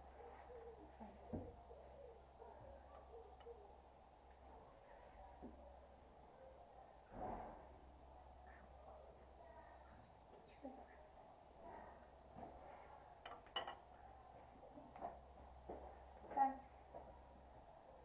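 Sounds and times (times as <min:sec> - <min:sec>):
small birds chirping: 0:00.0 - 0:05.7, 0:08.4 - 0:13.6
low steady hum: 0:00.0 - 0:18.0.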